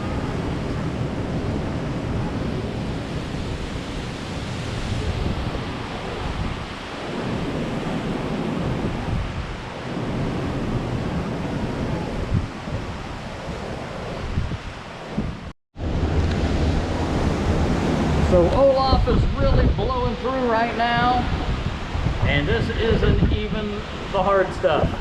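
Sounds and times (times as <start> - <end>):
ocean surf breaking: 0.0 - 25.0
wind gusting across microphone: 0.0 - 25.0.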